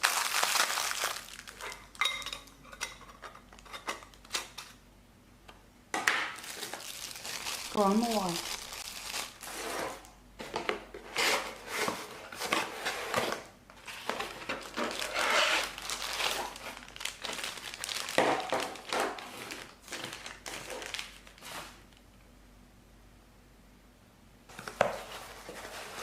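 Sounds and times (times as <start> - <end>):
plastic packaging crinkling: 0.0 - 2.3, 6.3 - 10.1, 13.8 - 22.0.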